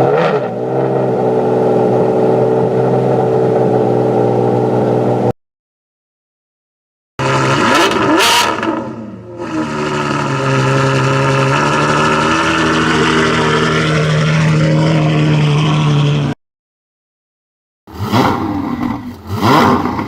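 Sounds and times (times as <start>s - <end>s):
car engine starting and revving: 0.0s - 5.3s, 7.2s - 16.4s, 17.9s - 20.0s.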